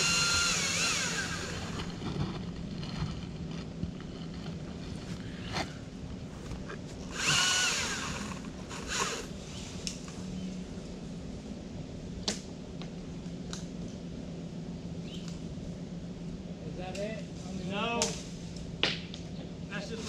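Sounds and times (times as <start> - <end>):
chainsaw motor whine revving: 0.0 - 2.4, 7.1 - 9.3
steady low hum: 0.0 - 20.0.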